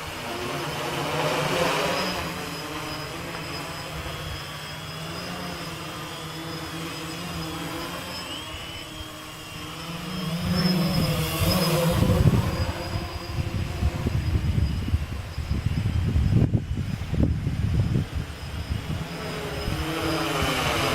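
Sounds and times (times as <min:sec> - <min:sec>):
drone propellers buzzing: 0:00.0 - 0:20.9
gusty wind noise: 0:08.4 - 0:20.9.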